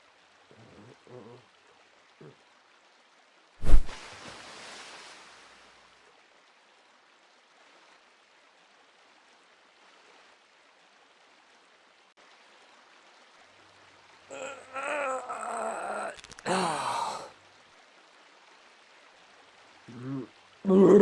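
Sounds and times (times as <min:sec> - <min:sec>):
hiss of falling water: 0:03.6 - 0:06.2, 0:14.3 - 0:20.6
wavering groan-like sound: 0:14.3 - 0:17.3, 0:19.9 - 0:21.0.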